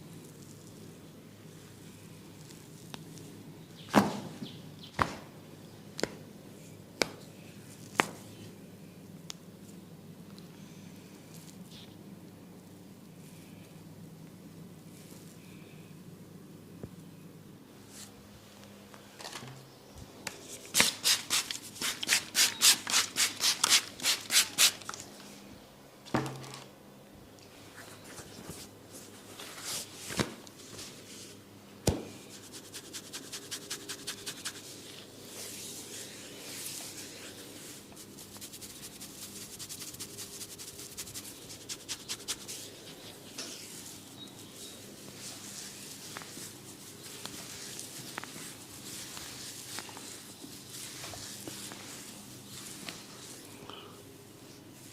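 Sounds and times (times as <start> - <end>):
hands stroking scalp: 32.2 - 43.9
hands rubbing scalp: 32.2 - 44.0, 45.0 - 53.4.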